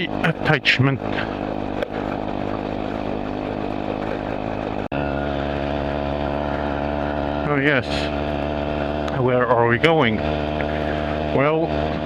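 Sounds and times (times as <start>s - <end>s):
moped two-stroke engine running: 0.0s - 12.0s.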